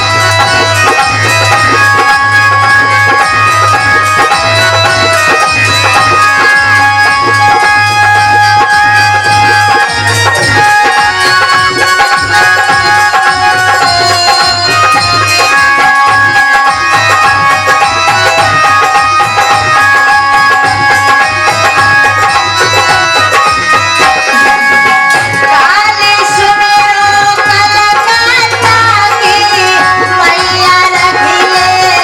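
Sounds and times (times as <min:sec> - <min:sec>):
sustained melody notes: 0:00.0 - 0:25.6
hand drum rhythm: 0:00.0 - 0:32.0.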